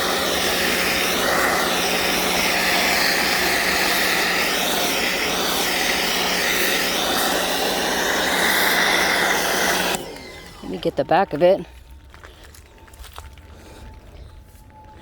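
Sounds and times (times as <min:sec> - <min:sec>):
foam spray hissing: 0:00.0 - 0:11.0
pressure washer motor hum: 0:00.0 - 0:11.6.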